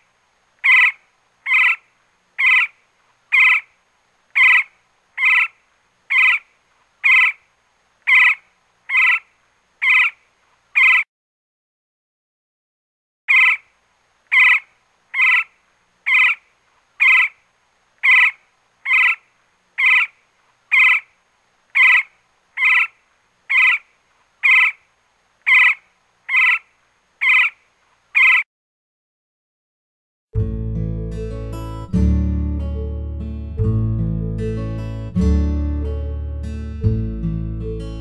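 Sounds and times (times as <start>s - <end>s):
woodpecker calls: 0.6s - 11.1s, 13.3s - 13.7s, 14.3s - 17.4s, 18.0s - 28.5s.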